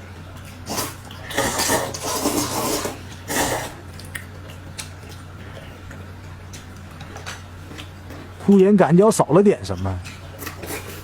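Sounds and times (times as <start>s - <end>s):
person slurping and gulping: 0.6s - 3.9s.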